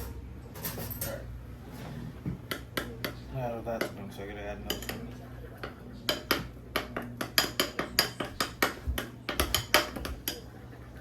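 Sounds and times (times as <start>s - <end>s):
spoon clinking against dishes: 2.4s - 10.6s.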